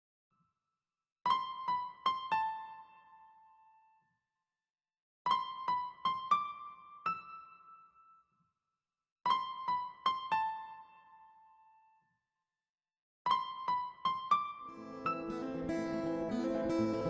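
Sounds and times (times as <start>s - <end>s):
high keyboard melody: 13.3s - 17.0s.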